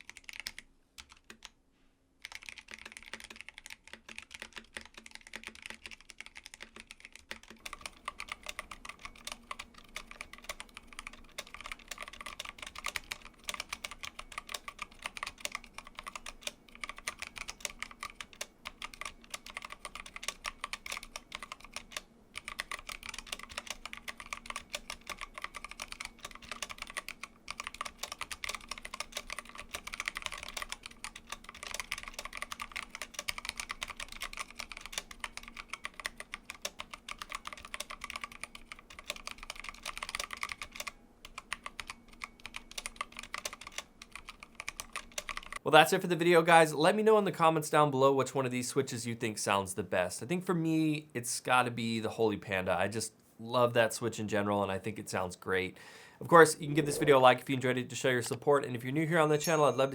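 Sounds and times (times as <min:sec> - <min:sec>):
mechanical keyboard typing: 0:00.0 - 0:01.6, 0:02.2 - 0:45.6.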